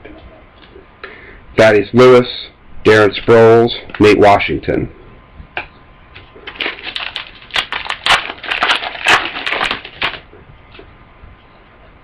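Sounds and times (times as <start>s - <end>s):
wrapper crinkling and tearing: 6.4s - 10.3s.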